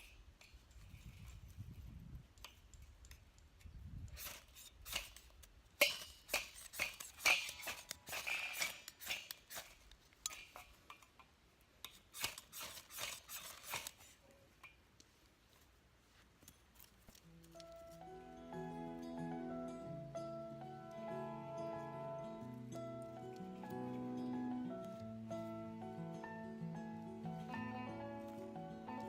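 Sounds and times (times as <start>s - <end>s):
short sharp scraping strokes: 12.1s - 14.2s.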